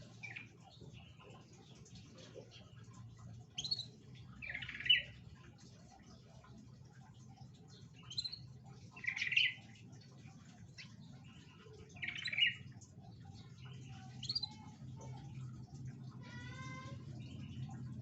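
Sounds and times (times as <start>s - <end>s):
faint low hum: 0.0s - 18.0s
canary chirping: 3.5s - 5.2s, 12.0s - 12.7s, 13.5s - 14.7s.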